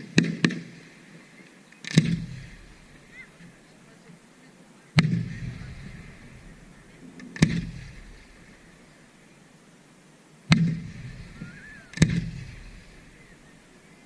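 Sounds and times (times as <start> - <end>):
firework shells bursting: 1.8 - 3.6, 5.0 - 9.0, 10.5 - 13.7
low rumble: 5.1 - 9.2, 10.6 - 14.0.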